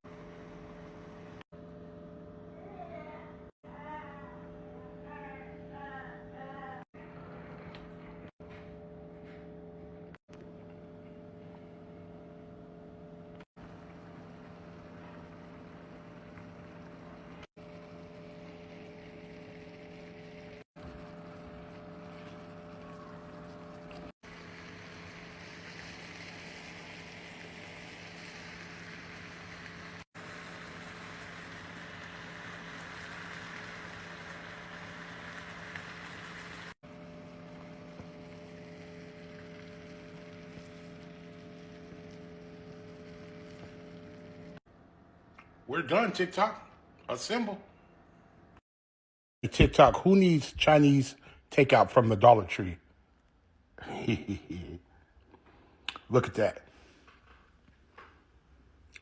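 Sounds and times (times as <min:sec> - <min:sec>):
machine hum: 0:00.0 - 0:48.6
food sizzling in a pan: 0:13.8 - 0:44.6.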